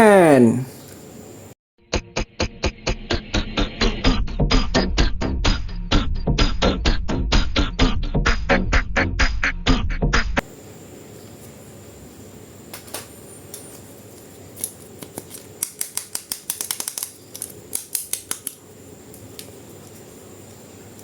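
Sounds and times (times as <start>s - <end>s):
scissors snipping packaging: 14.6s - 18.6s.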